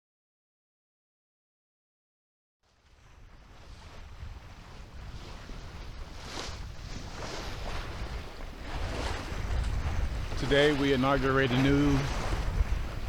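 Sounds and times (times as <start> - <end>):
water rushing along a hull: 2.6 - 13.0
wind buffeting microphone: 2.9 - 13.0.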